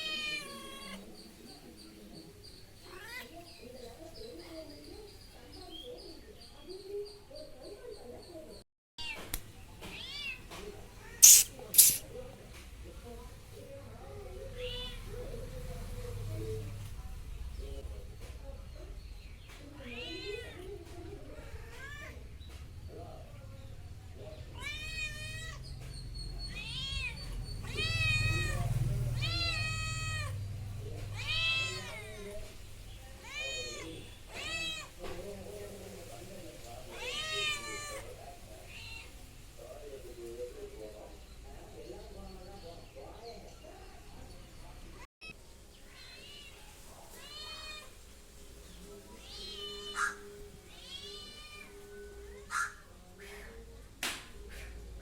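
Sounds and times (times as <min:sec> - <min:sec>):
cat meowing: 0:00.0 - 0:01.1, 0:11.0 - 0:12.0, 0:24.6 - 0:25.6, 0:26.5 - 0:30.4, 0:31.1 - 0:32.3, 0:33.2 - 0:35.0, 0:36.9 - 0:38.0.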